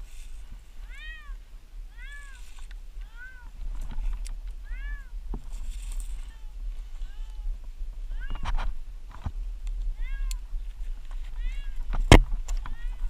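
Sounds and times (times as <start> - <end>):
cat meowing: 0.8 - 3.5, 4.6 - 5.2, 6.1 - 8.6, 10.0 - 10.4, 11.3 - 11.9, 12.6 - 13.0.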